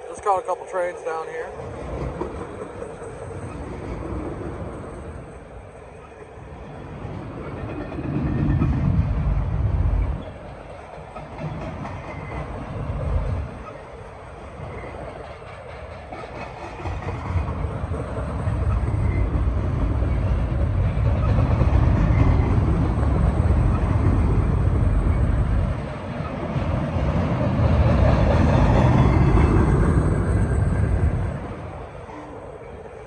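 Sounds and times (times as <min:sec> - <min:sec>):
freight train rumbling past: 0:00.0 - 0:33.0.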